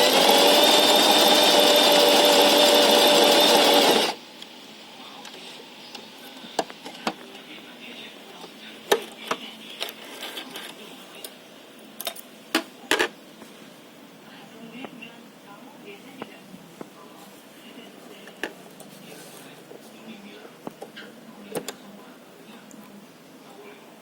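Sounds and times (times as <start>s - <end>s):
sewing machine running fast: 0.0s - 4.2s.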